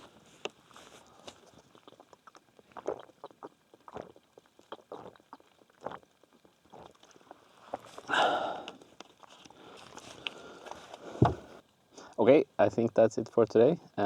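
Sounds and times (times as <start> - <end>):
small crunches and clicks: 7.8 - 11.0
footsteps: 11.2 - 11.6.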